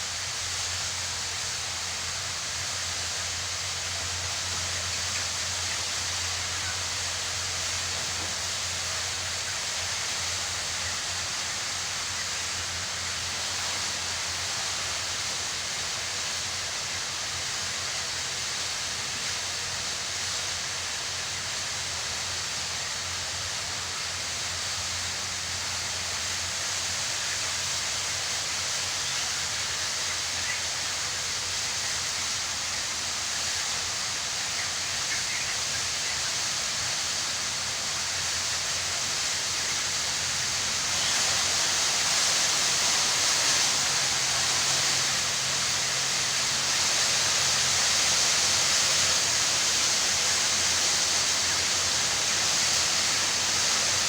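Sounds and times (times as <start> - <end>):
chicken shed din: 0.5 - 54.0.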